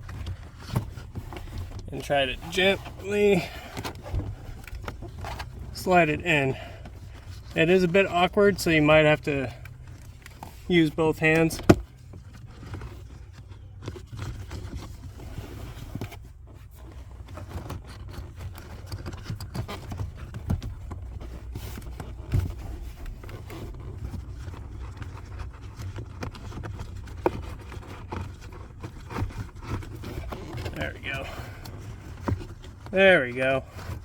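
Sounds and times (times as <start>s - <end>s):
steady low hum: 0.0s - 16.0s
filter scraping in plastic housing: 0.0s - 34.0s.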